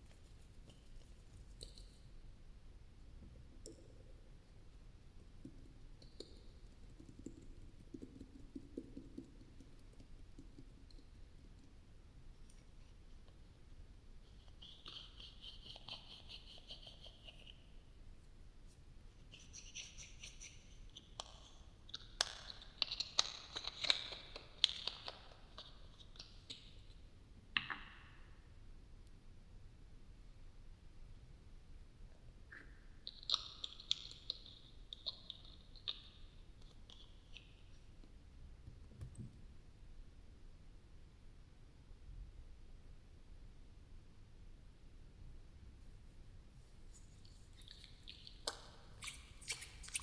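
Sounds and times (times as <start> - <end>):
faint taps and clicks by hand: 5.3 - 11.8.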